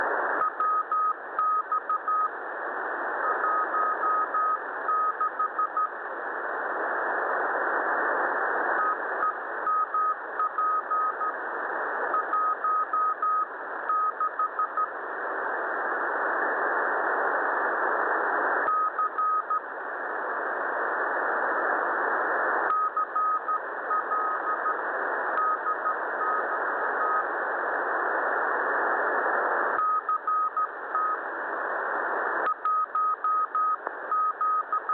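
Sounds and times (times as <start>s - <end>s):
radio receiver hiss: 0.0s - 34.9s
morse code beeps: 0.4s - 2.3s, 3.4s - 5.9s, 8.8s - 11.3s, 12.1s - 14.9s, 18.7s - 19.6s, 22.7s - 24.8s, 25.4s - 27.2s, 29.8s - 31.2s, 32.5s - 34.9s.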